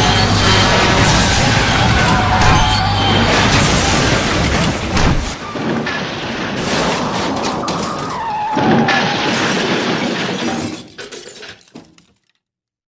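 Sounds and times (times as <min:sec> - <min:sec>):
tyre screech: 0:00.0 - 0:04.8
metal crunching: 0:00.0 - 0:12.1
debris tinkling: 0:00.0 - 0:12.4
glass shattering: 0:00.0 - 0:12.4.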